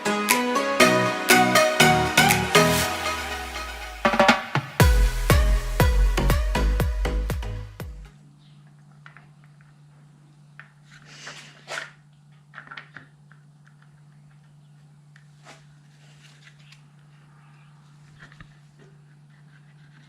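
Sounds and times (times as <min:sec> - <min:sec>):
steady low hum: 0:04.8 - 0:08.6.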